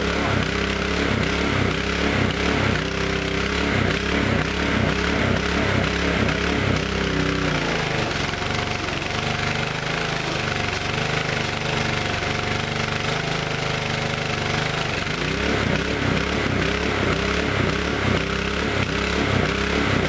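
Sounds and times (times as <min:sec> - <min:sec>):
small gasoline engine surging: 0:00.0 - 0:20.0.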